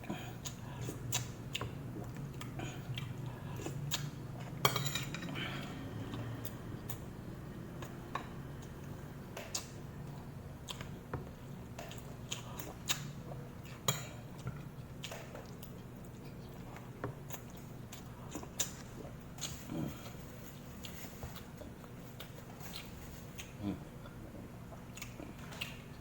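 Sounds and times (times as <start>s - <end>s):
low steady hum: 0.0s - 26.0s
chewing: 0.1s - 7.1s, 7.7s - 26.0s
cutlery clinking on dishes: 4.6s - 5.4s.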